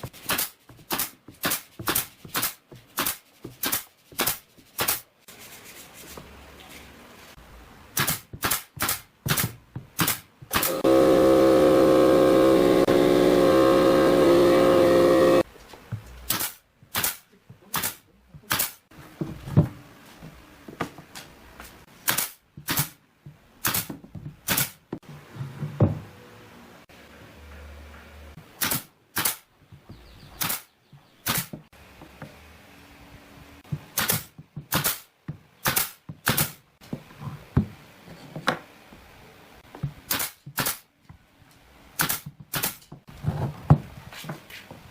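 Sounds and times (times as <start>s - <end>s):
steady machine drone: 10.7s - 15.4s.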